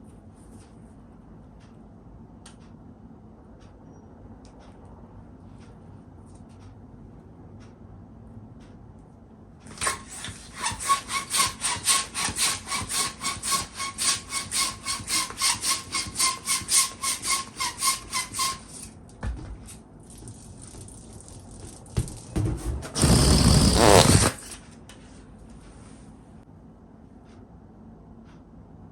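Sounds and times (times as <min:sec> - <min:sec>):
hand pump rasping strokes: 0:09.7 - 0:18.9, 0:21.6 - 0:24.6.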